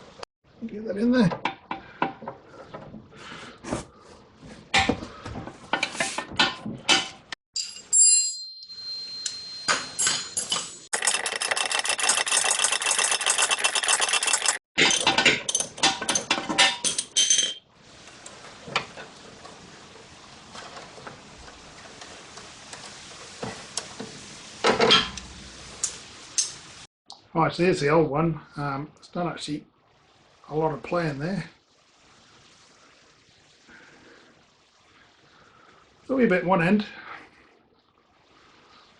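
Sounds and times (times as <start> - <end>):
metal tools clinking: 7.6 - 17.6
hand ratchet clicking: 11.0 - 14.6.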